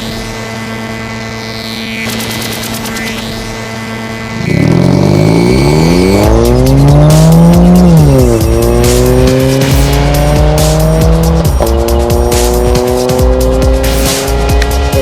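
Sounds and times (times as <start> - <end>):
car engine accelerating: 4.3 - 15.0
background music with a beat: 4.6 - 15.0.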